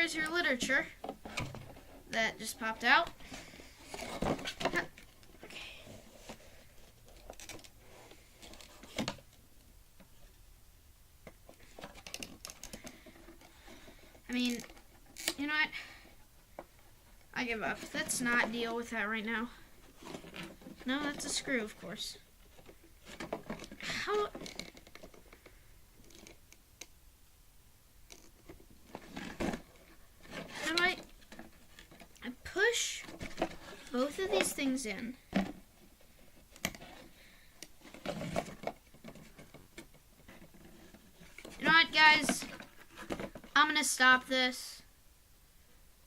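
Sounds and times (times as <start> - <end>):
plastic clicks and handling noises: 11.2 - 13.5.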